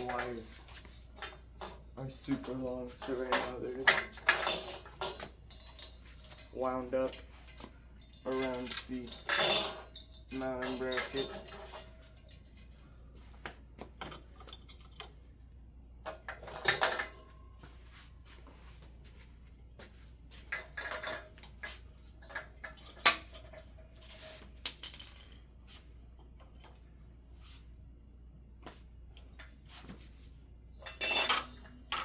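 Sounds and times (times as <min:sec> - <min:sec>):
metal clinks and scrapes: 0:00.0 - 0:13.0, 0:14.0 - 0:15.3, 0:16.0 - 0:18.2, 0:20.3 - 0:25.7, 0:30.8 - 0:32.0.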